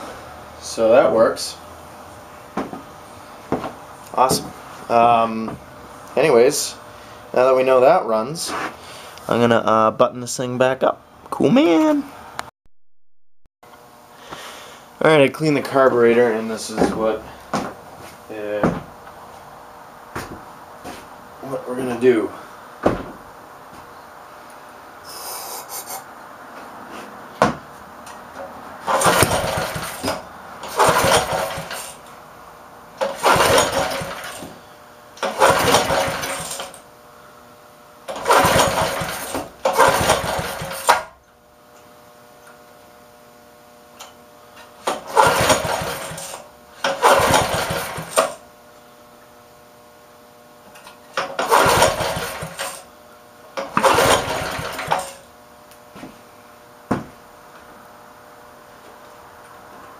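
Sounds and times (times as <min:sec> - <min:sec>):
small engine cranking: 0:28.8 - 0:32.0, 0:33.0 - 0:34.4, 0:35.2 - 0:36.8, 0:38.1 - 0:41.0, 0:44.9 - 0:48.4, 0:51.2 - 0:52.8, 0:53.6 - 0:55.2.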